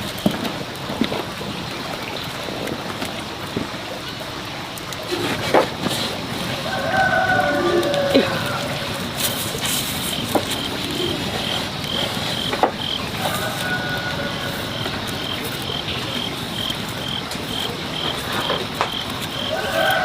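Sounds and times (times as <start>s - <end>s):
steady background hiss: 0.0s - 20.0s
cricket chirping: 10.1s - 20.0s.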